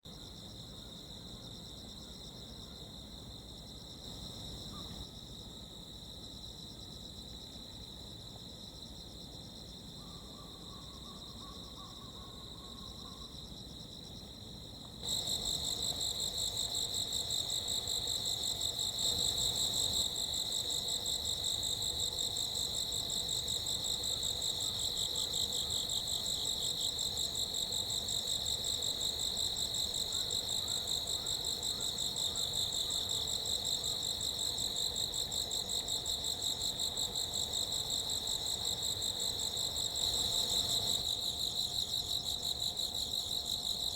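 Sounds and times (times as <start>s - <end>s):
insects chirring: 10.0s - 43.9s.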